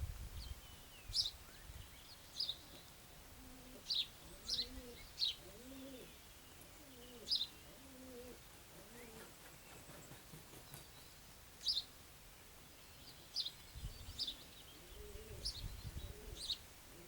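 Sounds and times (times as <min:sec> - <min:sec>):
low cooing call: 0:03.3 - 0:09.3, 0:14.3 - 0:17.0.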